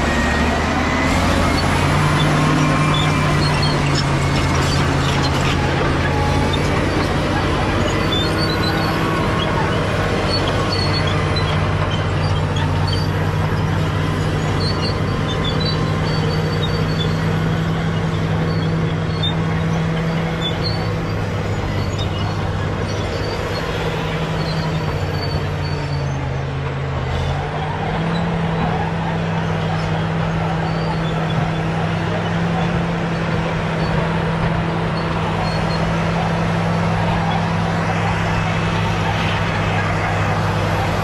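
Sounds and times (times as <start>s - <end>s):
bulldozer diesel engine: 0.0s - 41.0s.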